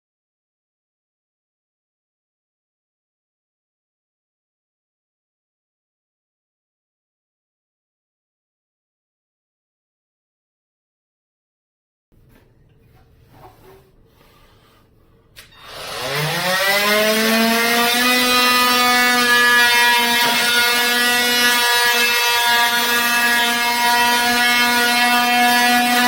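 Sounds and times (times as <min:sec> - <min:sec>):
power tool motor whine: 0:15.5 - 0:26.0.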